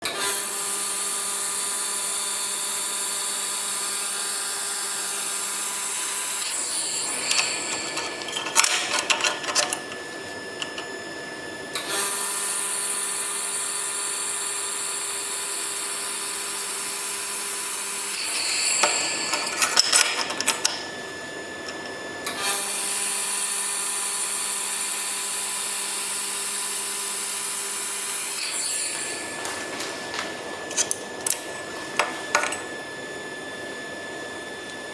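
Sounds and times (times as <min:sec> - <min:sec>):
faint machine hum: 0:04.5 - 0:13.5, 0:16.4 - 0:23.8, 0:28.7 - 0:34.9
clicking and metal clatter: 0:07.0 - 0:10.9, 0:18.4 - 0:20.8, 0:21.7 - 0:22.0, 0:32.0 - 0:32.7.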